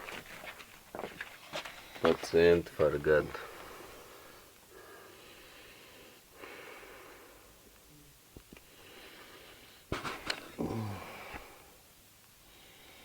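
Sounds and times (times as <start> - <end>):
man breathing heavily through nose: 3.4 - 7.7, 8.6 - 13.0.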